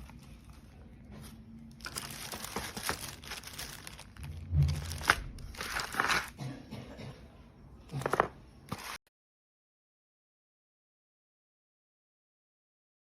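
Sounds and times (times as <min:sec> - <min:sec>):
crinkly packaging rustling: 0:00.0 - 0:06.4, 0:07.9 - 0:09.0.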